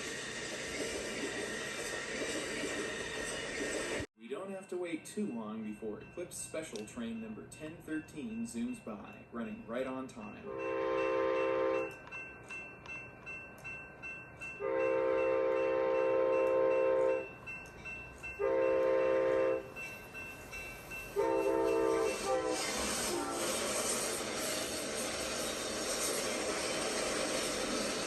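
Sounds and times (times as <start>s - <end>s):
passing train rush: 0.0s - 4.1s, 8.2s - 28.0s
locomotive air horn: 10.4s - 11.9s, 14.6s - 17.2s, 18.4s - 19.7s, 21.2s - 23.7s
train wheels clicking on rails: 19.7s - 28.0s.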